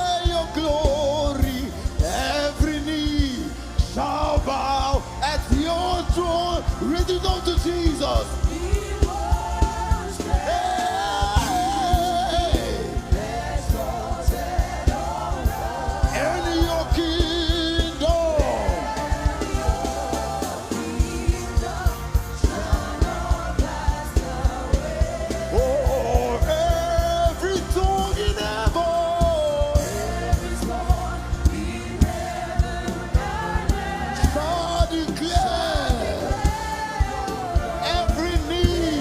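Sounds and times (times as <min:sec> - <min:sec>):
band with steady drum beat: 0:00.0 - 0:39.0
lead singer: 0:00.0 - 0:39.0
voices singing along: 0:00.0 - 0:39.0.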